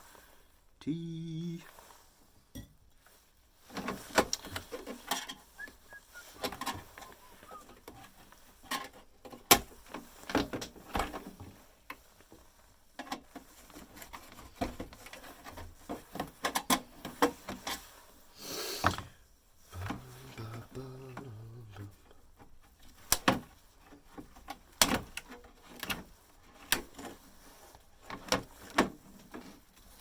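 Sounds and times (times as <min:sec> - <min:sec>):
plastic parts clicking and rattling: 0:03.6 - 0:05.6, 0:06.2 - 0:18.0, 0:19.8 - 0:30.0.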